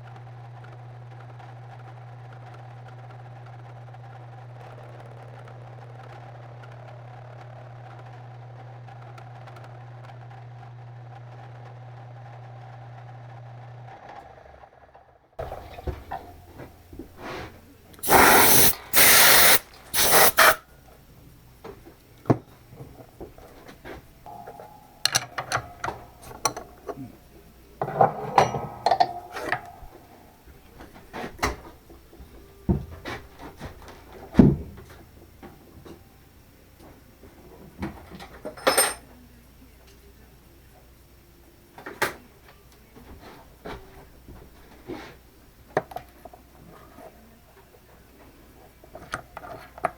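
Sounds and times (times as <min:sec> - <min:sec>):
loud hissing bursts: 0:17.2 - 0:20.7.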